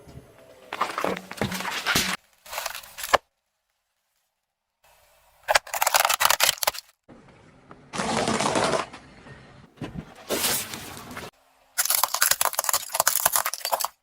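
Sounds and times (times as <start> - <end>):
objects crushed under car tyre: 0.7 - 3.2.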